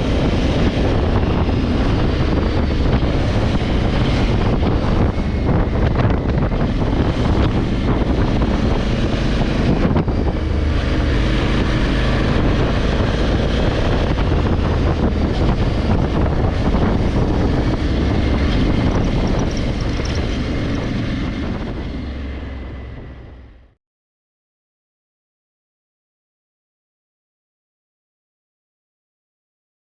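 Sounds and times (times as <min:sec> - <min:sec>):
motorcycle engine running: 0:00.0 - 0:23.7
wind rush on microphone: 0:00.0 - 0:23.8.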